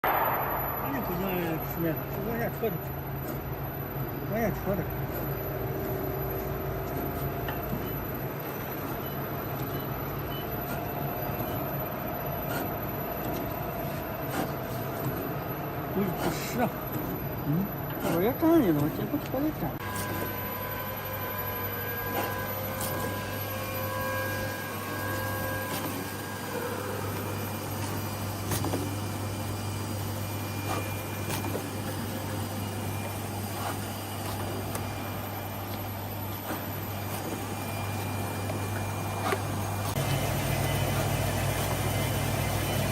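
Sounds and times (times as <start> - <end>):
faint held tone: 0.0 - 14.2
machinery humming: 0.0 - 42.9.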